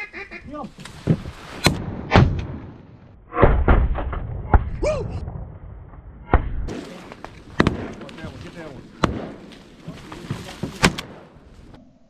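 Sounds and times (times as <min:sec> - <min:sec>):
sharp knocks and thuds: 0:00.7 - 0:02.7, 0:06.2 - 0:11.4.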